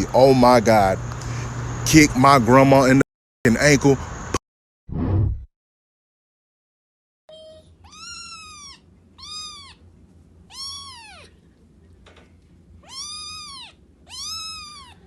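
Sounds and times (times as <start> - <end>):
cat meowing: 7.3 - 9.8, 10.5 - 11.4, 12.8 - 15.0.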